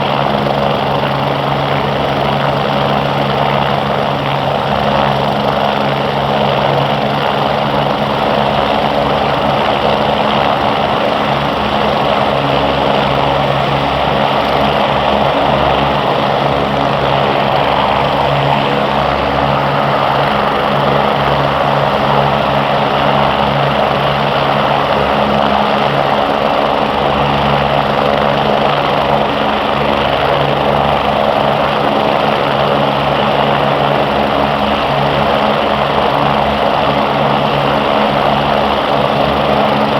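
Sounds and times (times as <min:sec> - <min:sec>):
helicopter turbine and rotor drone: 0:00.0 - 0:39.9.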